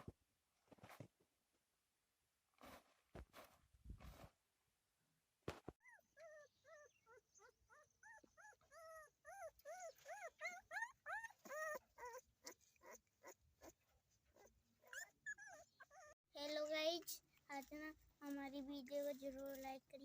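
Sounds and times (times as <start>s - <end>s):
puppies whimpering and yelping: 5.8s - 16.2s.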